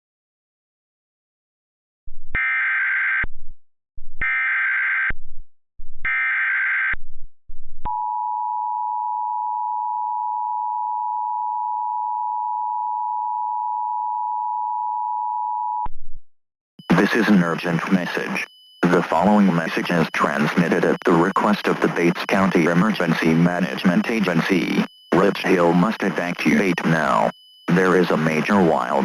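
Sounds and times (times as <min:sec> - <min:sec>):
digital data tone bursts: 0:16.8 - 0:29.0
two-tone attention signal: 0:16.8 - 0:29.0.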